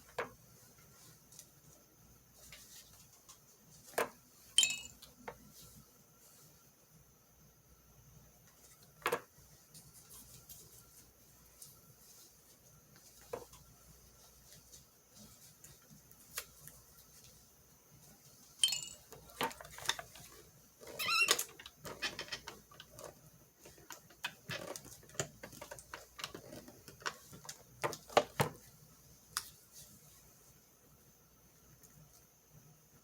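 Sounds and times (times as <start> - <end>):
short ringing clink: 4.6 - 4.9, 18.6 - 19.0.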